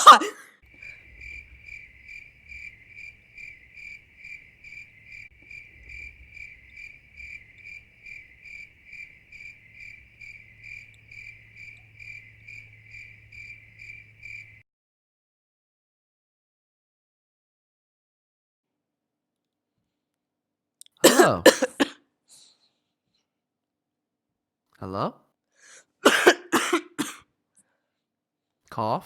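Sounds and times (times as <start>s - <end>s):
cricket chirping: 0.0s - 14.6s.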